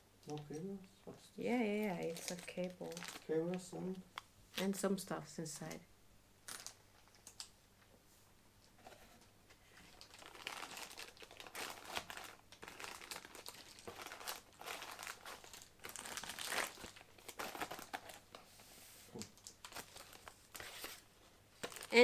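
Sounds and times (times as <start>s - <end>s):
plastic packaging crinkling: 1.7s - 3.8s, 9.8s - 18.4s, 19.2s - 22.0s.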